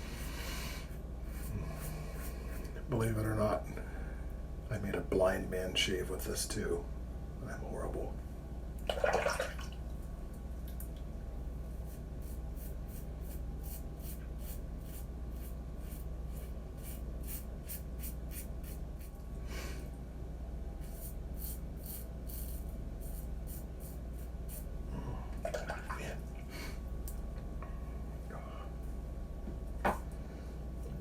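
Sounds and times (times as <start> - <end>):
razor scraping through stubble: 20.8 - 24.7.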